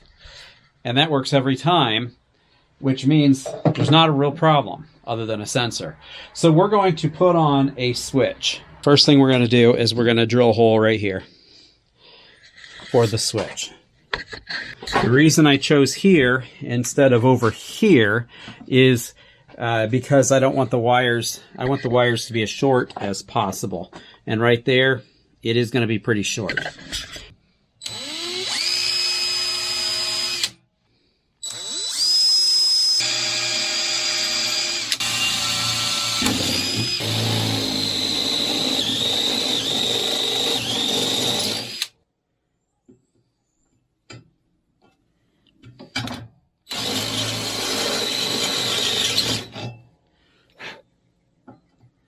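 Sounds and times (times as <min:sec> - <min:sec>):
electric drill whining: 0:27.8 - 0:30.6, 0:31.4 - 0:41.9, 0:46.7 - 0:49.6.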